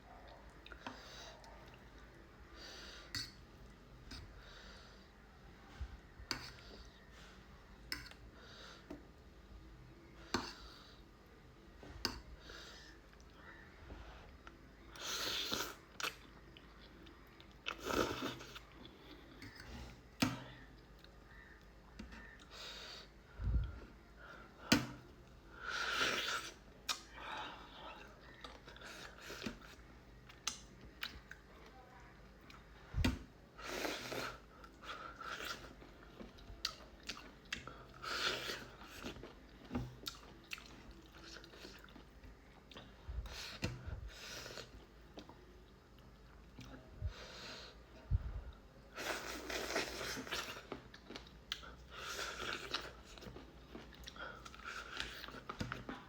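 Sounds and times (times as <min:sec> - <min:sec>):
person chewing crunchy food: 0:33.7 - 0:43.0, 0:49.0 - 0:56.0.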